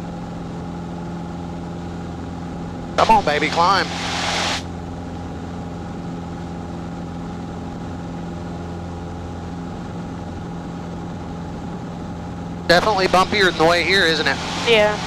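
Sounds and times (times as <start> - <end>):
propeller plane engine droning: 0.0 - 15.0.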